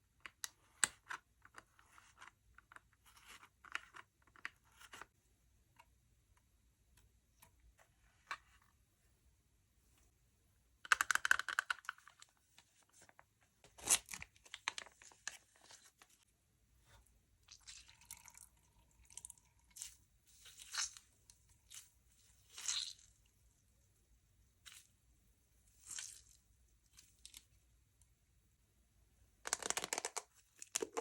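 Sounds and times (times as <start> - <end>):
crackling and crinkling: 10.9 - 16.3, 29.4 - 31.0.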